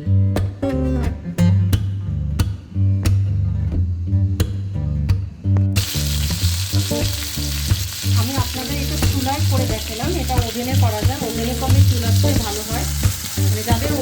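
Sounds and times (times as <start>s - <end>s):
plucked guitar music with bass: 0.0s - 14.0s
food frying in oil: 5.8s - 14.0s.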